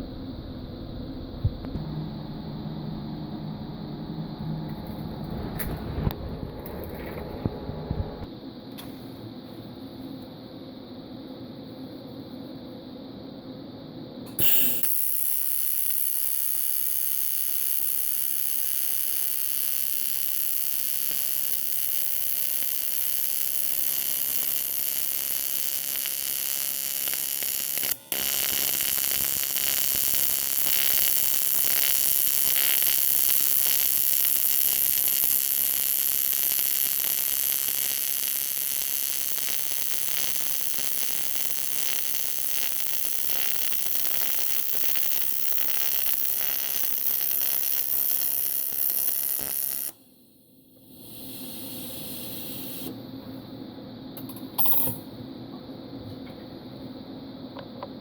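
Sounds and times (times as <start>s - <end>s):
welding arc buzzing hiss: 1.2s - 10.2s, 14.3s - 50.1s, 50.7s - 53.4s.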